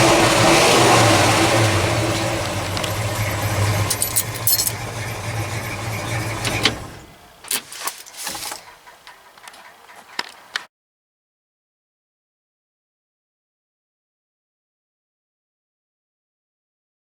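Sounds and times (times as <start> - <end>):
vehicle engine running: 0.0 - 10.6
light clicks and rattles: 7.4 - 10.7.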